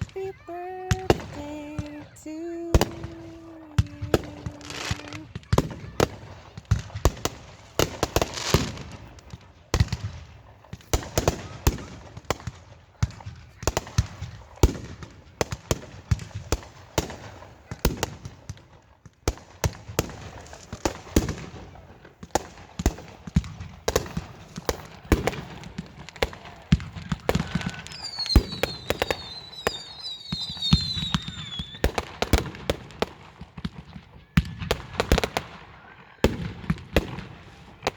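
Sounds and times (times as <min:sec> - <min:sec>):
fireworks whistles: 0:00.0 - 0:07.0, 0:23.9 - 0:32.4
fireworks bangs and crackles: 0:00.0 - 0:37.9.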